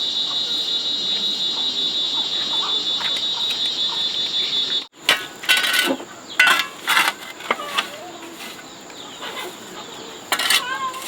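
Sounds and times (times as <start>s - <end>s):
high insect drone: 0.0s - 11.0s.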